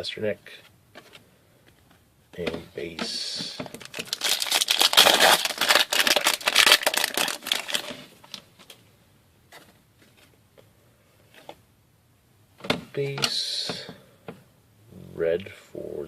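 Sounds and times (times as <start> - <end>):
foil wrapper tearing and crinkling: 3.7 - 8.1.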